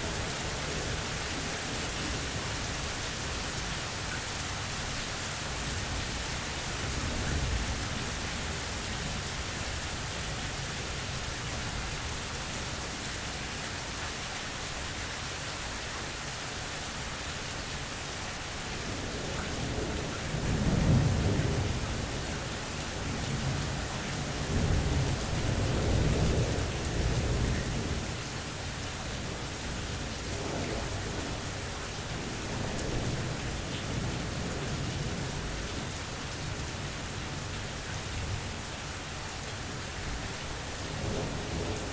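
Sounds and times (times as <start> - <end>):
steady rain falling: 0.0 - 41.9
rolling thunder: 19.0 - 28.2.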